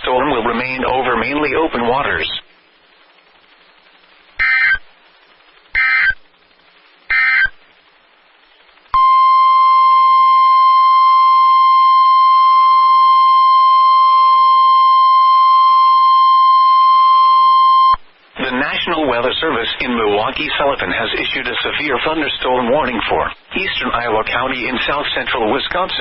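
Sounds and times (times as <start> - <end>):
digital data squawks: 4.4 - 4.8, 5.8 - 6.2, 7.1 - 7.5
loud steady alert tone: 4.4 - 4.8, 5.8 - 6.2, 7.1 - 7.5.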